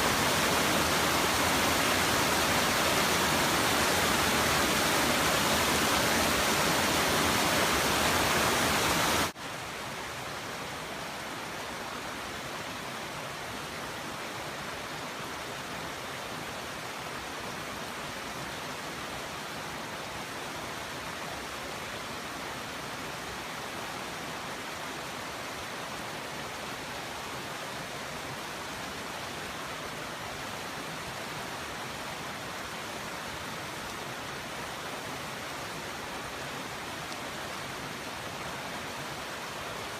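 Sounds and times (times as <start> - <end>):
water rushing over waterfall: 0.0 - 39.9.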